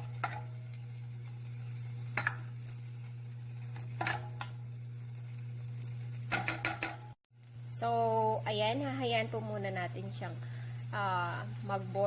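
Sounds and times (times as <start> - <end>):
spatula scraping a pan: 0.0 - 2.8, 3.5 - 4.6
chicken sizzling in a pan: 0.0 - 12.0
steady low hum: 0.0 - 12.0.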